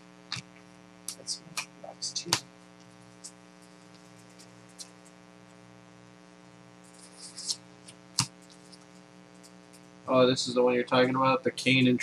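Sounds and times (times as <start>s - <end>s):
electrical hum: 0.0s - 12.0s
cards clicking and rustling: 6.9s - 8.9s.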